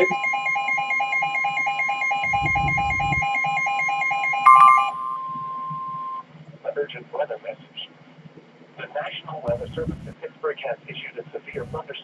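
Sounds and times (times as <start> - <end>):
pulsing electronic alarm beep: 0.0 - 0.6, 1.4 - 6.2
steady alarm tone: 0.0 - 6.2, 9.5 - 10.2, 11.6 - 11.8.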